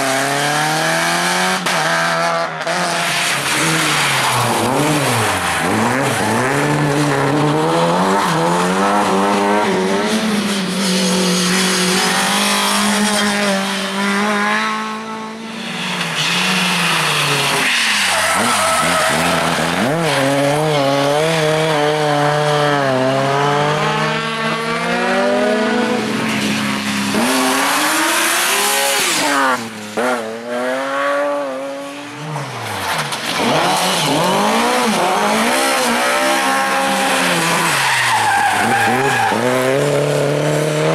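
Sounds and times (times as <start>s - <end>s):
rally car engines revving: 0.0s - 40.9s
tyres squealing and skidding: 2.9s - 13.0s, 15.4s - 21.6s, 32.2s - 40.7s.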